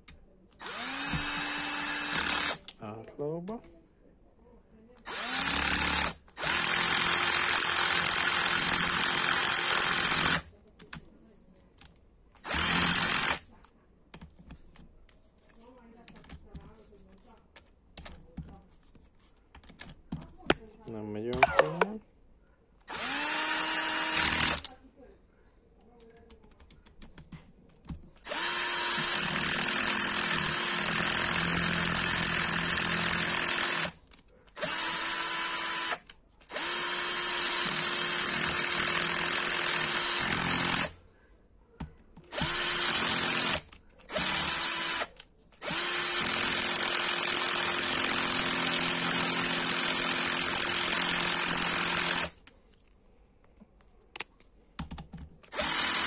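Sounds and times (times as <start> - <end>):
cordless drill whirring: 0.6 - 2.8, 5.0 - 10.5, 12.4 - 13.4, 22.9 - 24.7, 28.2 - 34.0, 34.6 - 41.0, 42.3 - 52.4, 55.4 - 56.0.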